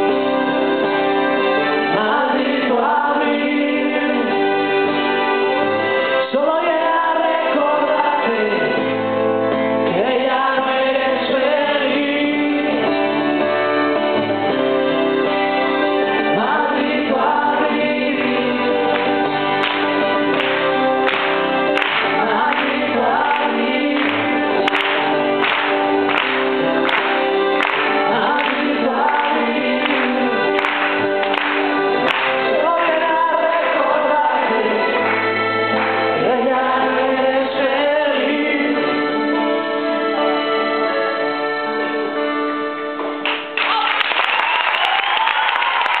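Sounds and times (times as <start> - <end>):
live rock band playing: 0.0 - 10.2, 11.2 - 37.1, 38.7 - 43.6
person singing: 0.0 - 13.5, 16.0 - 19.8, 21.7 - 25.1, 26.2 - 42.4.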